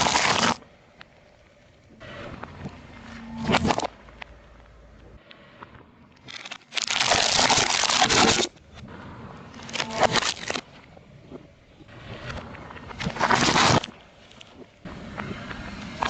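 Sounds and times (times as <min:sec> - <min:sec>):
car tyre crushing crunchy objects: 0:00.0 - 0:05.2, 0:06.2 - 0:08.6, 0:09.5 - 0:10.8, 0:12.6 - 0:16.0.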